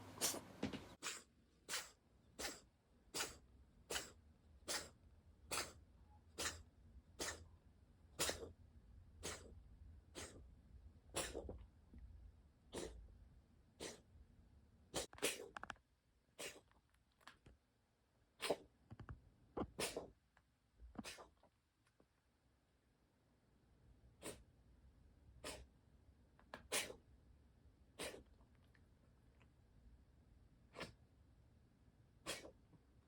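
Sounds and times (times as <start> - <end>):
kitten reverse sneezing: 0.1 - 7.5, 8.2 - 8.6, 9.2 - 9.5, 10.1 - 10.4, 11.1 - 11.5, 12.7 - 13.0, 13.8 - 14.0, 14.9 - 15.5, 16.4 - 16.6, 18.4 - 18.7, 19.7 - 20.1, 21.0 - 21.3, 24.2 - 24.5, 25.4 - 25.7, 26.7 - 27.0, 28.0 - 28.3, 30.7 - 31.0, 32.2 - 32.6.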